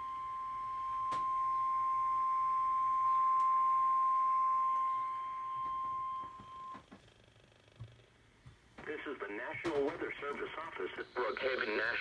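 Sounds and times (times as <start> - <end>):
steady high alarm tone: 0.0 - 6.8
faint radio static: 8.8 - 12.0.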